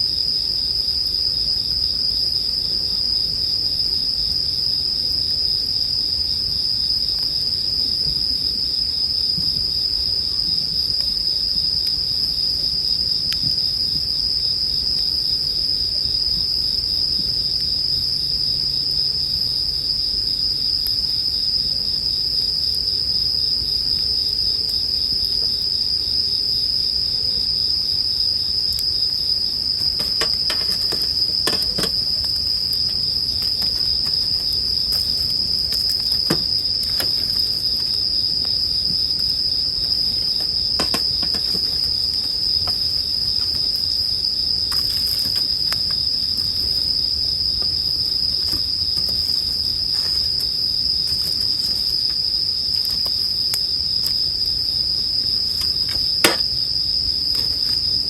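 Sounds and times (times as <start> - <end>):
crickets chirping: 0.0 - 58.0
campfire crackling and popping: 29.6 - 43.8.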